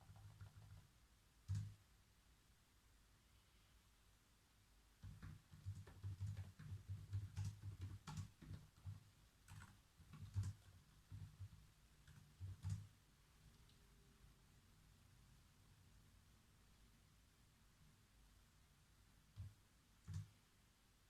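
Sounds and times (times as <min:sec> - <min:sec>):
typing on computer keyboard: 0:00.0 - 0:01.8, 0:05.0 - 0:12.9, 0:19.4 - 0:20.3.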